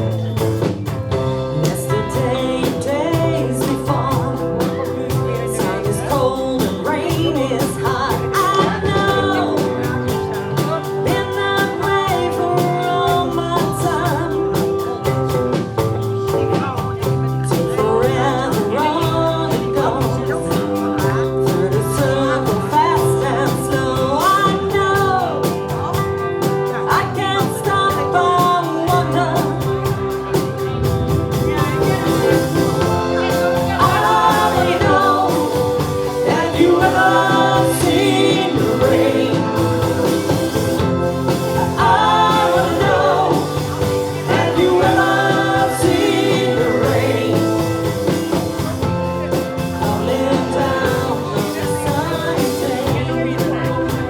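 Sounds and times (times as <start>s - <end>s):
lead vocal singing: 0.0s - 54.0s
rock band playing: 0.0s - 54.0s
drum beat: 28.9s - 54.0s.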